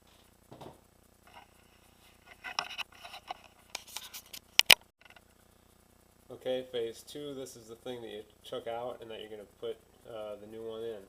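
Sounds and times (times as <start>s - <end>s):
rustles and scrapes: 1.2s - 5.3s.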